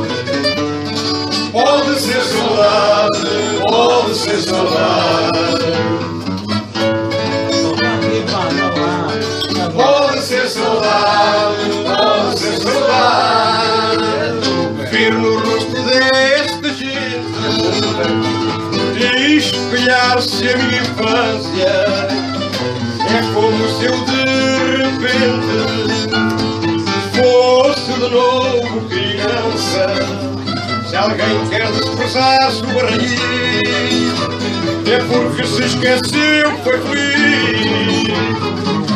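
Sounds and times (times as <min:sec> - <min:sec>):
plucked guitars playing: 0:00.0 - 0:38.9
steady bass: 0:31.2 - 0:38.9.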